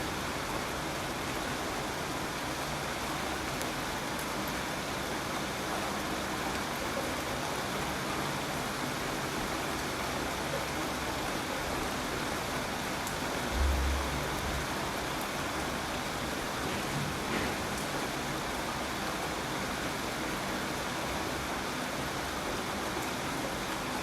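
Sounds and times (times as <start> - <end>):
steady rain hiss: 0.0 - 24.0
low rumble: 13.5 - 14.8.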